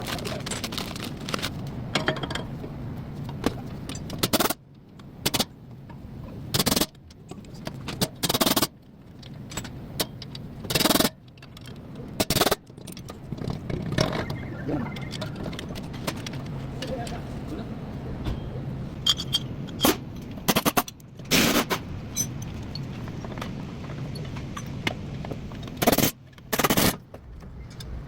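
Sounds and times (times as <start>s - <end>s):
low background hum: 0.0s - 28.0s
metallic tool clanks and scrapes: 19.0s - 20.0s.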